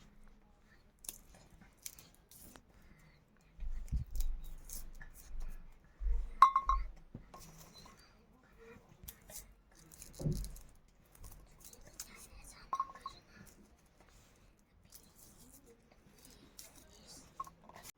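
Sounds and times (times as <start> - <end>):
kitchenware knocking and clinking: 6.3 - 7.0, 12.7 - 13.1.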